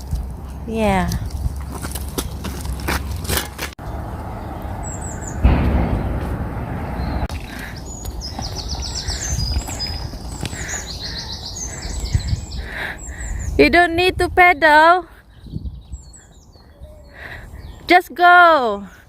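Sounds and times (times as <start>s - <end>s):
low rumbling: 3.8s - 12.8s
small bird chirping: 6.9s - 13.6s.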